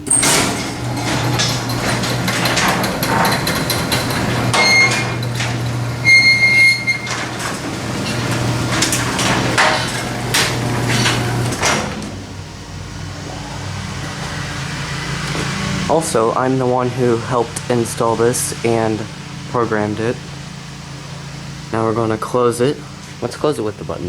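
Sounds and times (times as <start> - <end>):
door clunking and rattling: 0.0 - 12.6
garage door opener motor: 0.0 - 24.0.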